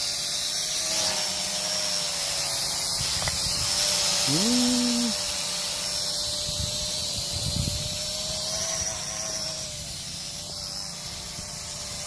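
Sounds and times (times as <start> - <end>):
drone propellers buzzing: 1.6 - 6.9
wind rumbling on microphone: 6.4 - 8.3.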